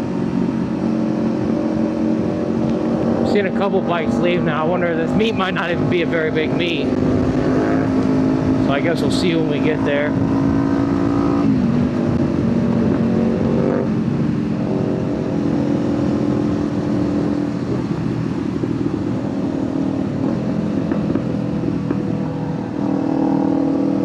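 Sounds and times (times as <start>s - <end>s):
exhaust crackling and popping: 5.2s - 9.2s.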